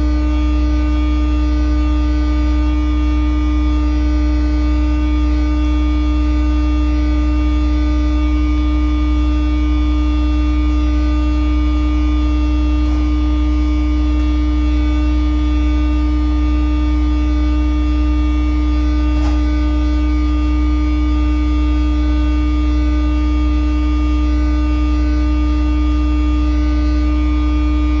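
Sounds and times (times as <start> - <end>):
machinery low drone: 0.0 - 28.0.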